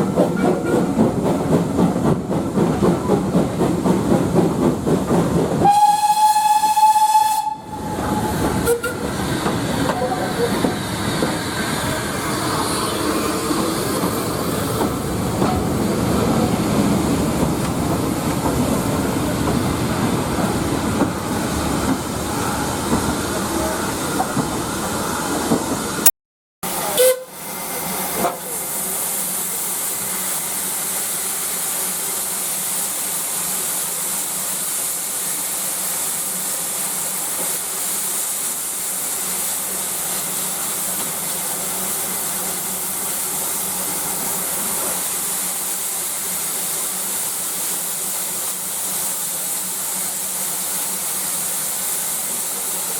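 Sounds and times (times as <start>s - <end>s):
steam train rumbling and hissing: 0.0s - 52.9s
steam whistle blast: 5.6s - 9.1s, 26.8s - 27.4s.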